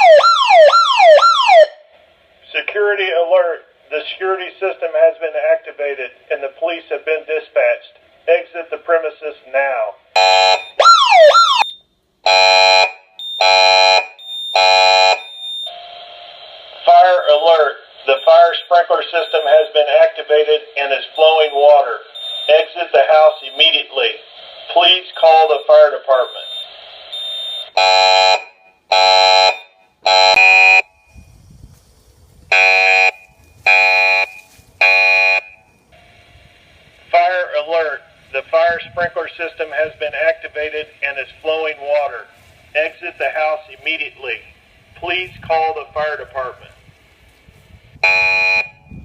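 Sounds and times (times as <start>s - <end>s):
falling siren sweeps: 0.0s - 1.8s, 10.5s - 11.8s
steady alarm tone blasts: 0.0s - 1.9s, 10.2s - 31.2s, 32.5s - 38.3s, 48.0s - 48.9s.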